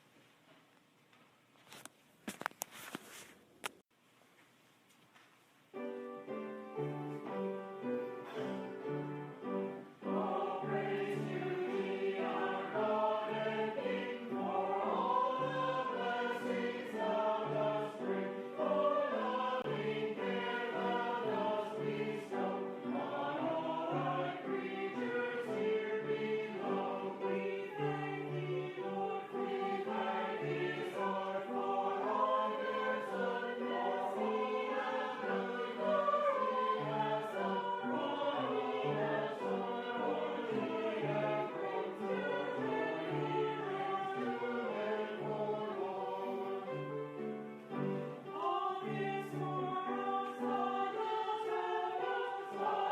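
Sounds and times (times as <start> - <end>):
keyboard accompaniment: 5.7 - 52.9
choir singing a hymn: 5.8 - 52.9.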